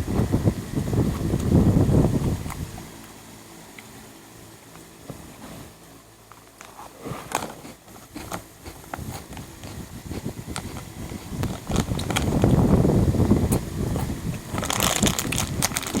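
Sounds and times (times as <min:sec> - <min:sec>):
crunchy bread sticks being chewed: 0:06.6 - 0:12.6, 0:13.4 - 0:16.0.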